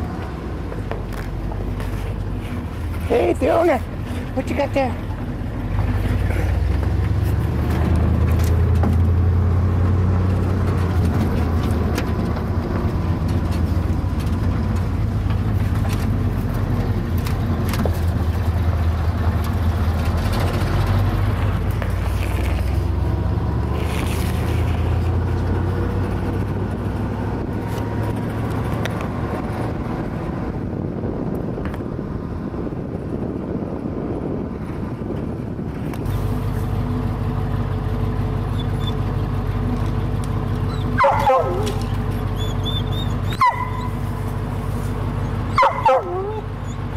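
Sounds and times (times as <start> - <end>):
truck engine and road rumble: 0.0 - 46.9
knocks and rattles: 10.2 - 18.6.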